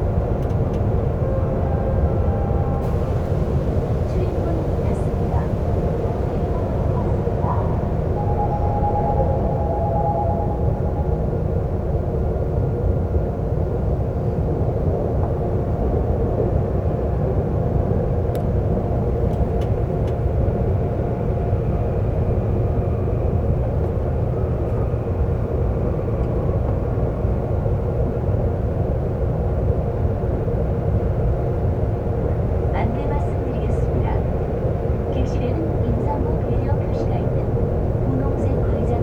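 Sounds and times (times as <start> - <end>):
faint tonal hum: 0.0 - 12.4, 31.1 - 39.0
subway train rumbling: 0.0 - 39.0.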